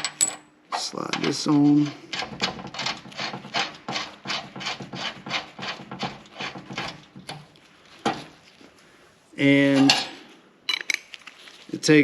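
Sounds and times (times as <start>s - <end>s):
metal-on-metal rasping: 0.0s - 8.4s.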